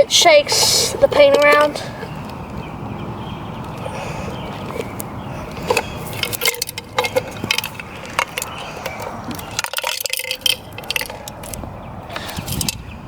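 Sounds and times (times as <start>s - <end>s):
glass marble rattling in metal can: 5.7s - 11.3s.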